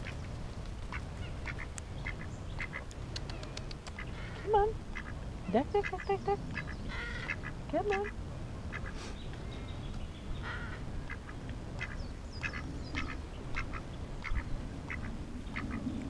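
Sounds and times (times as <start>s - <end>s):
ducks quacking: 0.9s - 2.9s, 3.9s - 9.1s, 10.4s - 15.9s.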